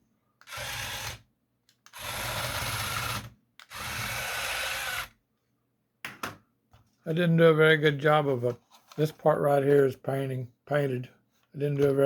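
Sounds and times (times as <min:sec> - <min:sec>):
small gear motors whirring: 0:01.9 - 0:05.1.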